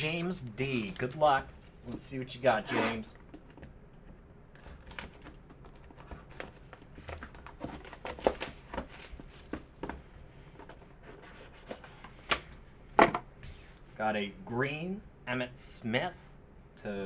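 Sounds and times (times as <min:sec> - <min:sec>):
packaging crinkling and crackling: 0:04.6 - 0:09.8.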